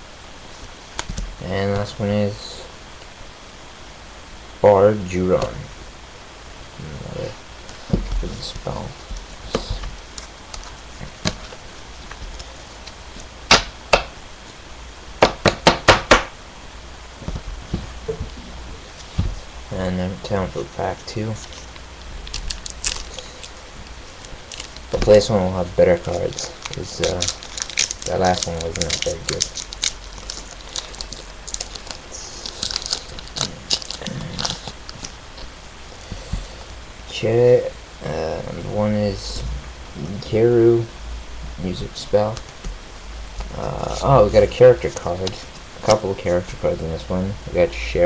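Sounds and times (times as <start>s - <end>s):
wrapper tearing and crinkling: 21.4s - 35.5s.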